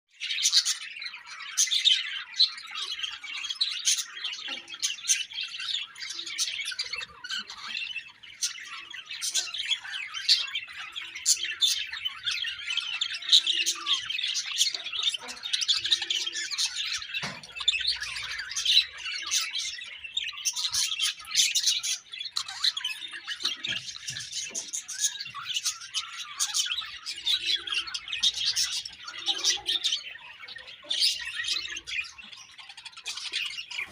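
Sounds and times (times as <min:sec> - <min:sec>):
budgerigars chattering: 0:00.1 - 0:33.9.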